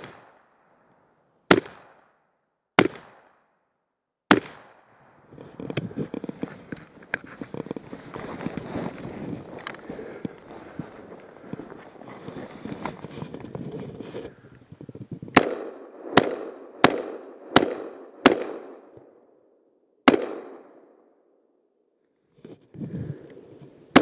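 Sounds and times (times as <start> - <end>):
rifle shots with echo: 0.0 - 0.8, 1.5 - 3.5, 4.3 - 5.3, 15.3 - 19.2, 20.0 - 21.0
rustling handling noise: 5.3 - 15.1.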